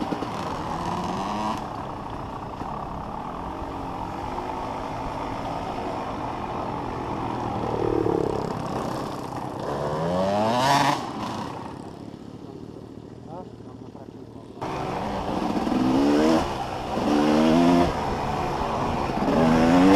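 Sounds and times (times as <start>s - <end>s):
dirt bike engine revving: 0.0s - 5.4s, 7.1s - 11.8s, 14.6s - 19.9s.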